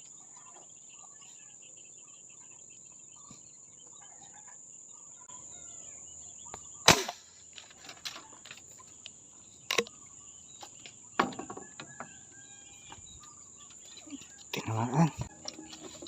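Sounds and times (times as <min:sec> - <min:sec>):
air rifle shot: 0:06.8 - 0:07.3.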